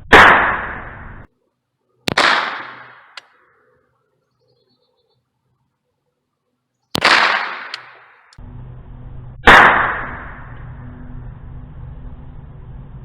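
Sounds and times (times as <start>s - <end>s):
gunshots with echo: 0.0s - 1.2s, 2.1s - 3.2s, 7.0s - 8.4s, 9.4s - 10.5s.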